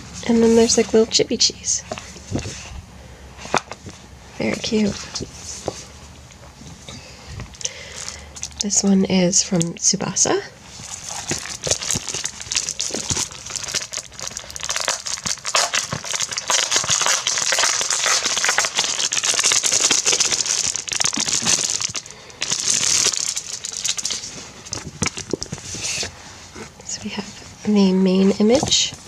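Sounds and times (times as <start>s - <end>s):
plastic bag crinkling: 10.6s - 29.0s.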